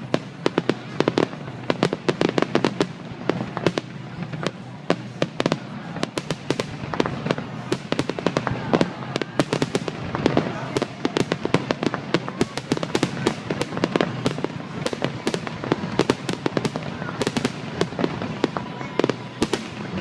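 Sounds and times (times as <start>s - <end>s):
fireworks bangs and crackling: 0.0s - 20.0s.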